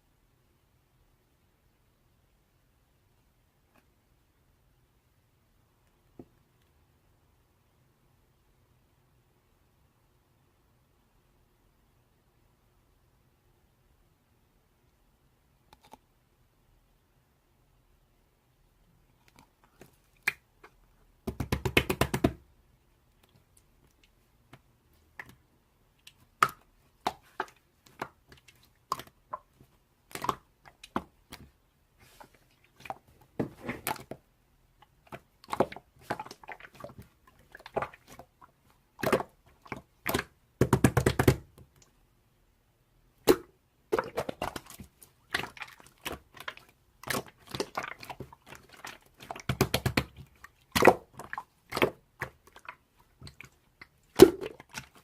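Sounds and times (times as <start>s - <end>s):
hands squishing slime: 19.2s - 22.5s, 23.2s - 41.9s, 43.2s - 55.0s
rapid crackling of slime: 26.0s - 41.5s, 43.2s - 55.0s.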